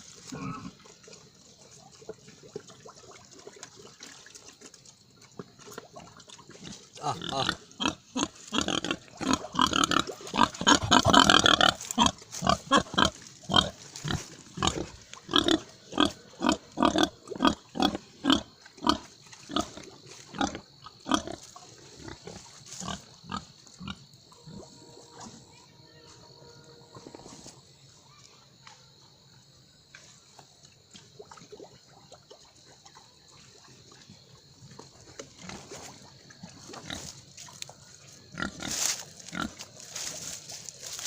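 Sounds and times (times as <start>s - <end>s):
pigs grunting: 0.2s - 0.9s, 6.0s - 25.4s, 38.3s - 41.0s.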